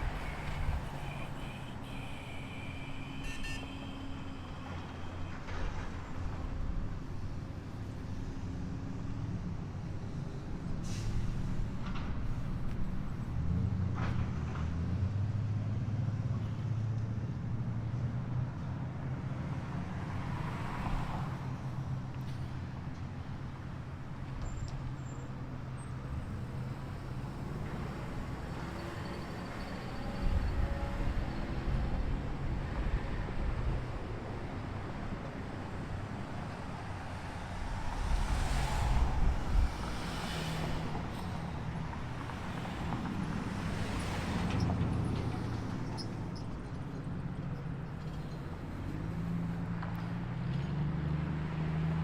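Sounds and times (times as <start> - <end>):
vehicle engines rumbling: 0.0 - 52.0.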